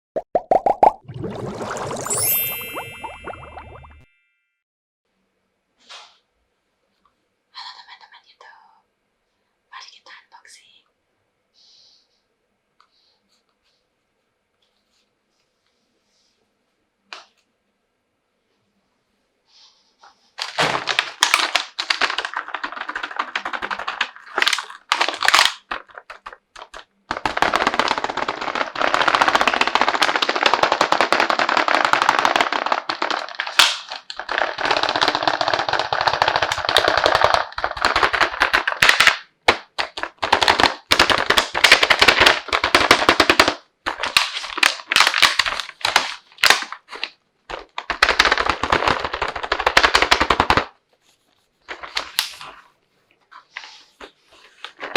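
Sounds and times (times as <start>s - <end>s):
plastic packaging crackling: 20.4s - 50.8s.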